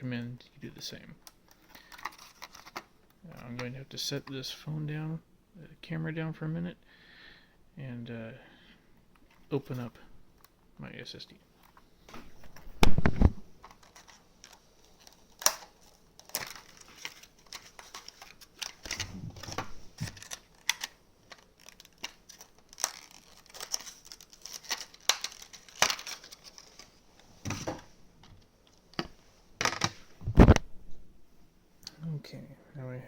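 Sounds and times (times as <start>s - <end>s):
clicks and rustles: 12.4s - 30.6s
packaging crinkling and tearing: 13.6s - 27.0s.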